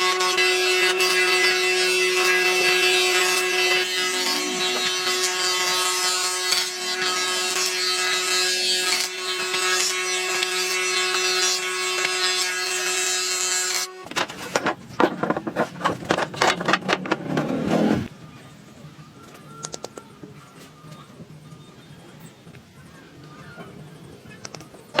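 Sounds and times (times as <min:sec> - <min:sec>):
power tool whining on wood: 0:00.0 - 0:14.1.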